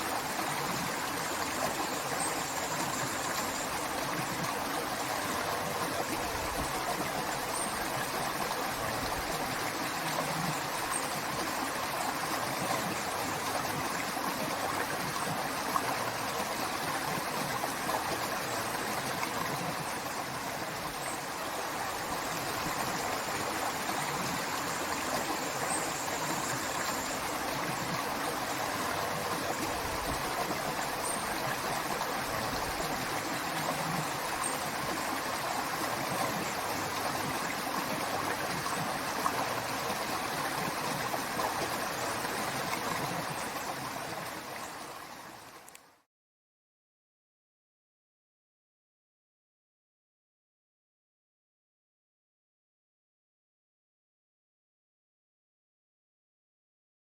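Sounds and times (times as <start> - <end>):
river water rushing over rocks: 0.0 - 45.4.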